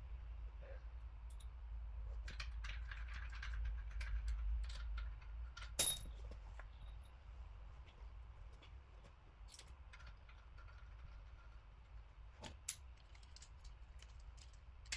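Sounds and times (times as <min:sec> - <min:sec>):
steady low hum: 0:00.0 - 0:02.4
sharp metallic click with ring: 0:05.8 - 0:06.1.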